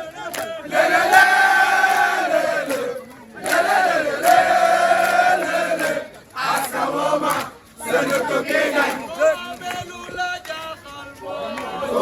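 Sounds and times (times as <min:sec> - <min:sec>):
crowd chanting in unison: 0:00.0 - 0:10.2, 0:11.2 - 0:12.0.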